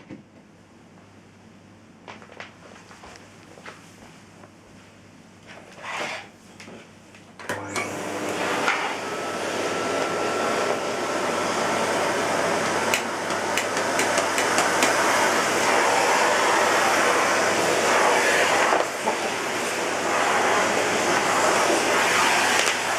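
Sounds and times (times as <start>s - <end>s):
vacuum cleaner motor rushing: 7.4s - 22.9s.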